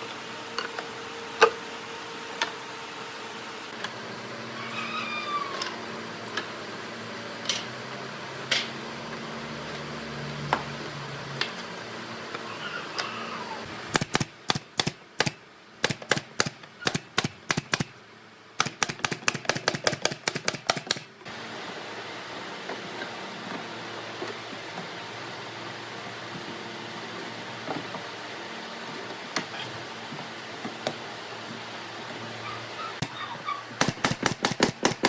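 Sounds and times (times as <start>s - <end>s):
scattered clicks: 18.6s - 21.1s
rapid sharp taps: 33.8s - 35.0s.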